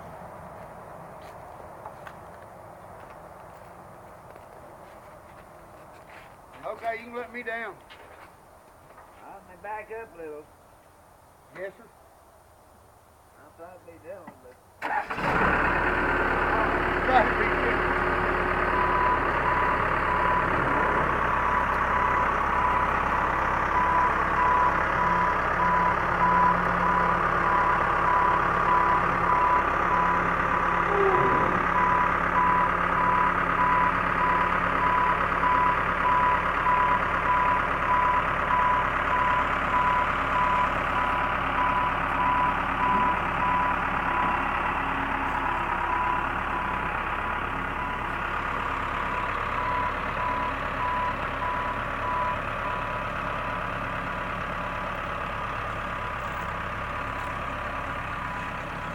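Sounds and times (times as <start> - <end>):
backhoe engine running: 14.8 - 58.9
reversing alarm beeping: 18.6 - 44.6, 45.3 - 46.7, 49.1 - 53.6.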